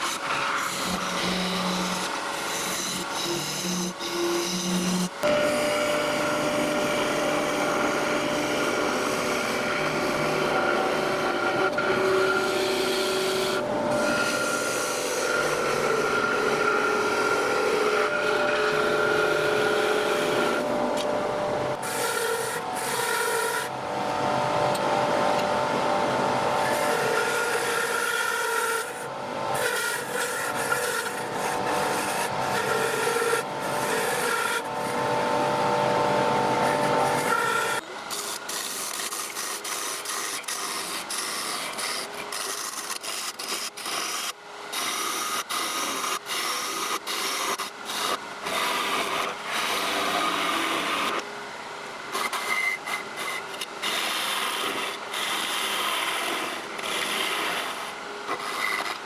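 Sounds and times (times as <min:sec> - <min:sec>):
tool scraping turning wood: 0:00.0 - 0:21.1, 0:21.7 - 0:23.8, 0:26.6 - 0:51.3, 0:52.0 - 0:59.0
wood spinning on a lathe: 0:00.0 - 0:59.0.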